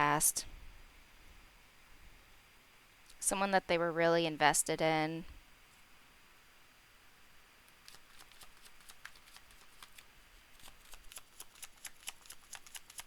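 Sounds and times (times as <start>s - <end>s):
cards being shuffled: 7.7s - 13.0s.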